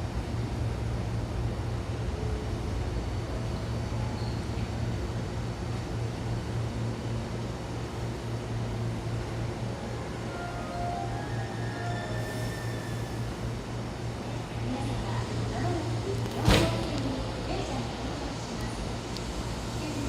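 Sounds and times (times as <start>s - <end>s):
train humming and rumbling: 0.0s - 20.0s.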